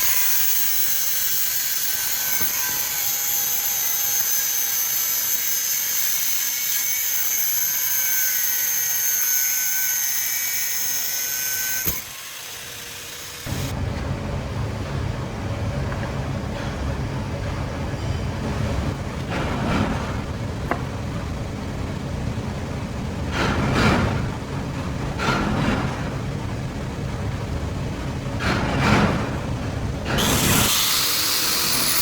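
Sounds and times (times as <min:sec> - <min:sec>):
power tool whining: 0:00.0 - 0:13.7, 0:30.1 - 0:32.0
low steady rumbling: 0:13.5 - 0:30.4.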